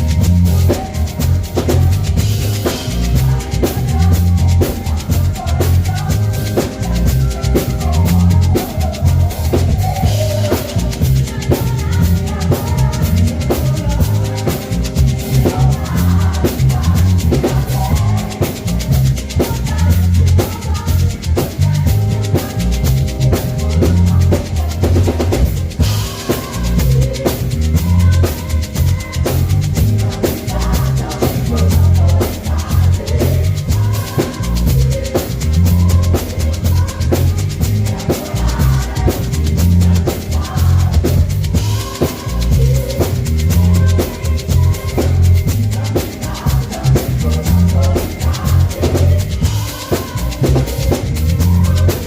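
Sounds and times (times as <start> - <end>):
drum kit beat: 0.0 - 52.0
heavy bass line: 0.0 - 52.0.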